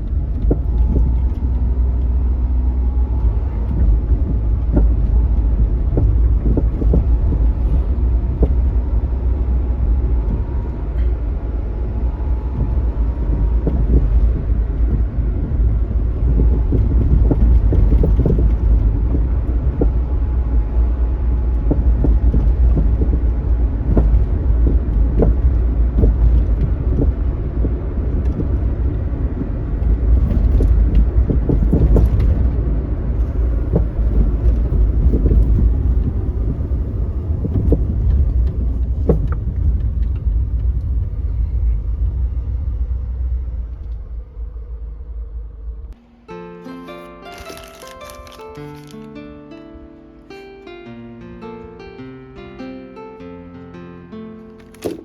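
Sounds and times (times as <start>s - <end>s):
road and engine rumble: 0.0s - 55.0s
light knocking rattle: 3.0s - 8.9s.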